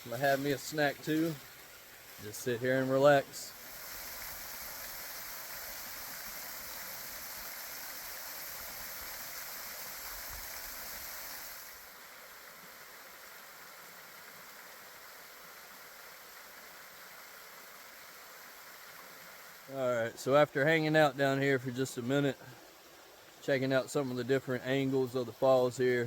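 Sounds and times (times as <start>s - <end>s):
water pouring and splashing: 0.0s - 11.9s.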